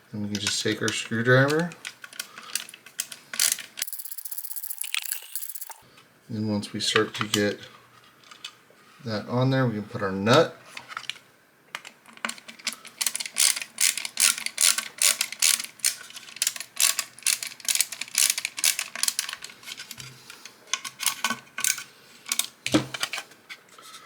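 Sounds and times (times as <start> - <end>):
screwdriver clicks and rattles: 11.8 - 19.9.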